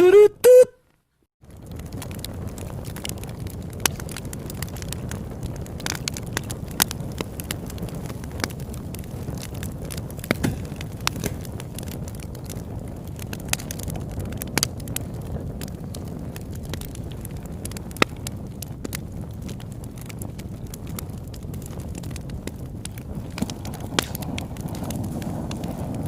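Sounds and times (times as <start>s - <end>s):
campfire crackling: 0.9s - 26.0s.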